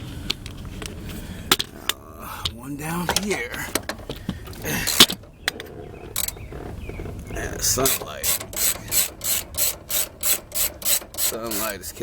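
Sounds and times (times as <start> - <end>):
socket ratchet clicking: 7.8 - 11.8.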